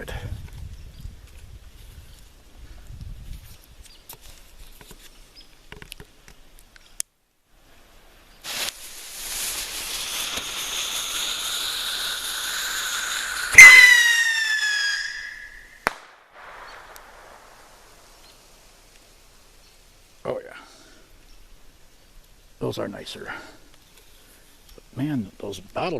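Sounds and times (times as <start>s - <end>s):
bottle rocket hissing: 8.4s - 18.7s
high whistling tone: 10.8s - 15.8s
sharp loud pop: 15.8s - 17.4s.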